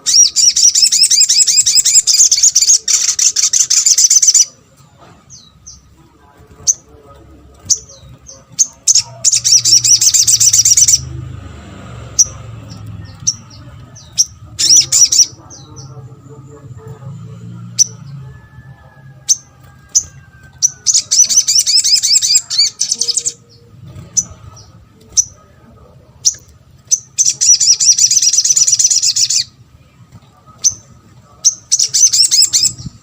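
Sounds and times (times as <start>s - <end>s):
bird chattering trills: 0.0s - 4.6s, 6.5s - 33.0s
bird chipping calls: 0.0s - 4.6s, 7.5s - 11.3s, 12.1s - 16.2s, 19.2s - 25.6s, 26.2s - 29.6s, 30.5s - 33.0s.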